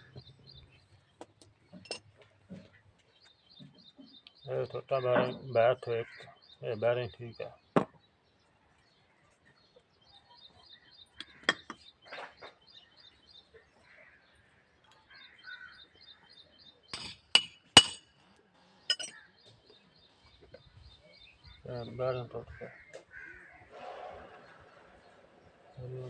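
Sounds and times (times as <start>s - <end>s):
metal tools knocking and clinking: 1.8s - 2.2s, 16.9s - 18.1s, 18.9s - 19.2s
small bird chirping: 2.7s - 14.1s.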